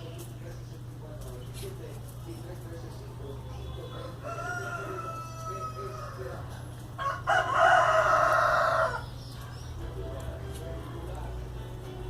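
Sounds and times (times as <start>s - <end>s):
rooster crowing: 3.9s - 9.1s.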